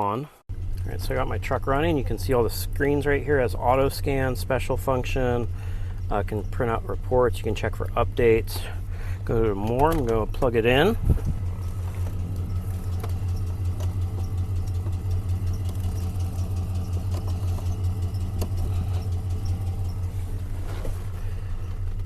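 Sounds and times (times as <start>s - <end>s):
pickup engine idling: 0.5s - 22.0s
faint clicks: 11.2s - 20.1s.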